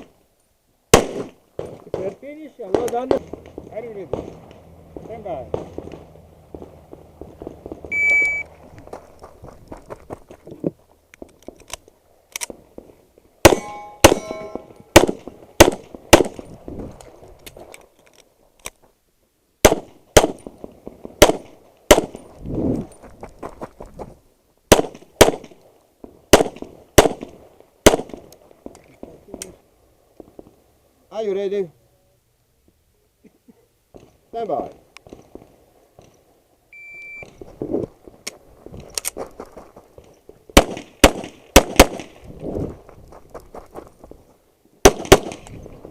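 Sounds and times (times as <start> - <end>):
shot timer beep: 7.9 - 8.5, 13.6 - 14.8, 36.8 - 37.3
handgun shots: 13.4 - 16.4
steel targets clanging: 13.6 - 15.0.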